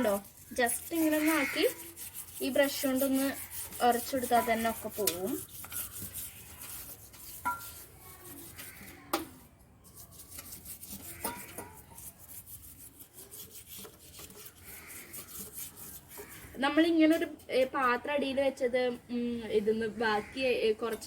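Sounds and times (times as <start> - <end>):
stiff brush scrubbing metal: 0.0 - 9.0, 9.8 - 17.3.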